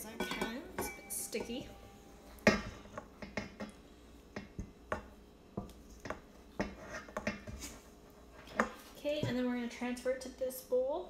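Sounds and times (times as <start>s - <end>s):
spatula scraping a bowl: 6.6s - 8.6s.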